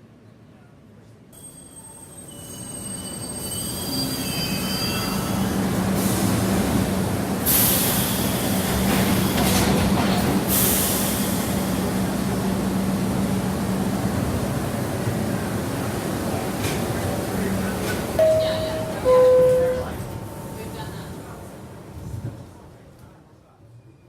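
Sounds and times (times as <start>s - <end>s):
subway train rumble and hum: 0.0s - 24.0s
high wheel squeals: 2.2s - 5.7s.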